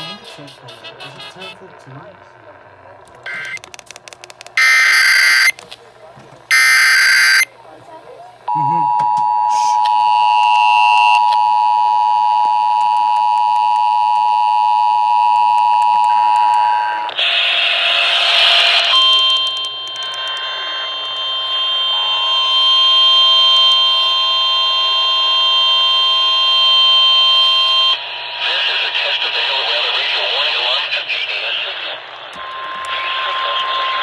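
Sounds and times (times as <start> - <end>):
two-tone alert signal: 4.6 - 5.6, 6.5 - 7.5
steady alert tone: 6.5 - 7.5.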